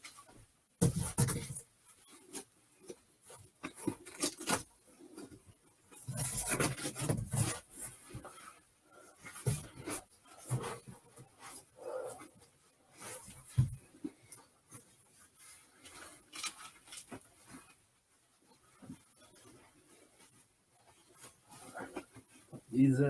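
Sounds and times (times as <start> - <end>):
packaging rustling and scraping: 3.3 - 4.9, 6.0 - 11.7, 14.7 - 17.7.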